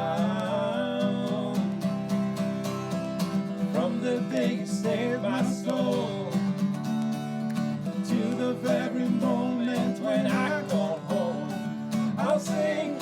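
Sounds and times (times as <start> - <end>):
person singing: 0.0 - 1.9, 3.7 - 6.6, 8.0 - 13.0
strummed acoustic guitar: 0.0 - 13.0.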